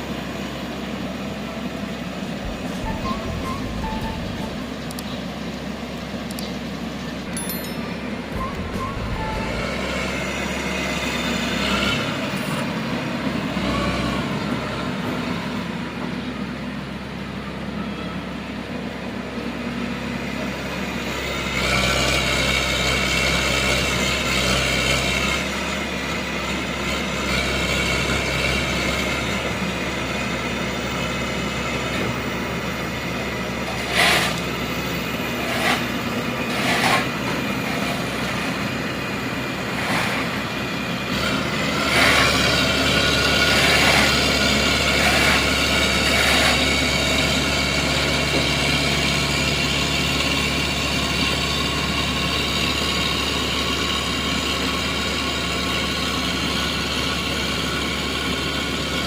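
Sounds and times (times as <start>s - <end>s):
excavator engine drone: 0.0s - 59.0s.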